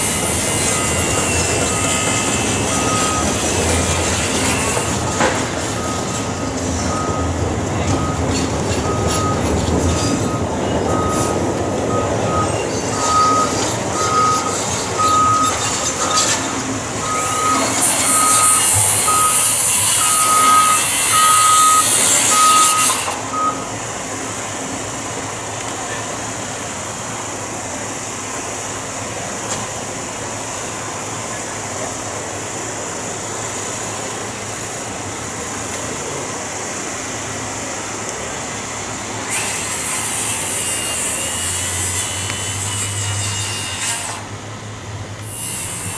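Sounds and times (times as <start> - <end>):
truck reversing alarm beeps: 0.0 - 25.2
engine and site noise: 0.0 - 45.9.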